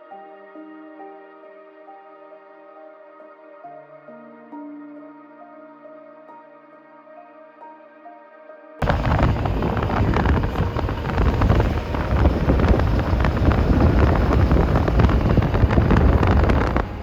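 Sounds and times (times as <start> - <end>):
wind buffeting microphone: 8.8 - 17.0.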